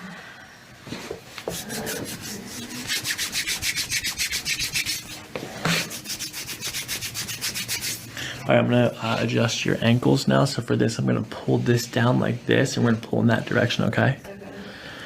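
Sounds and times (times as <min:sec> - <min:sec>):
hands rubbing briskly: 0:01.4 - 0:08.1.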